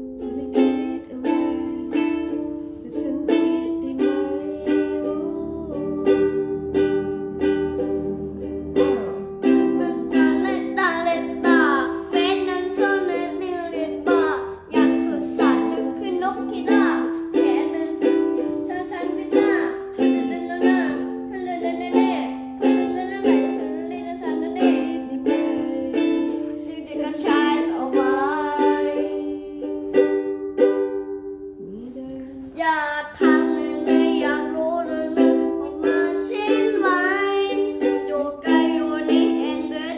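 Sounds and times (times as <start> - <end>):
person singing pop song: 0.0 - 30.2, 31.6 - 39.9
strummed acoustic guitar: 4.7 - 29.0.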